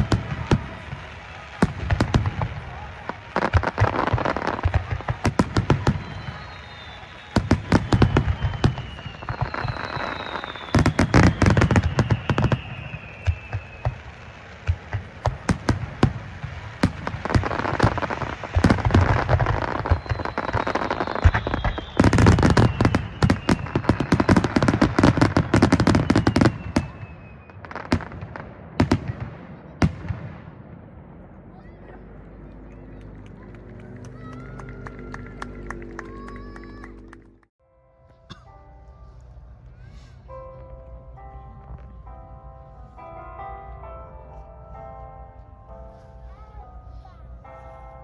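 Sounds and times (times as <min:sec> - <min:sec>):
falling firework whistle: 0:00.0 - 0:15.7, 0:16.5 - 0:28.1
fireworks bangs and crackling: 0:00.0 - 0:37.2.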